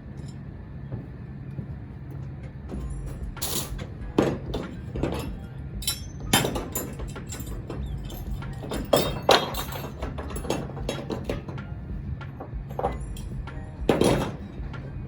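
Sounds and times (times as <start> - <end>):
steady low hum: 0.0 - 15.0
crowbar clanking on metal: 3.5 - 11.6, 13.9 - 14.5.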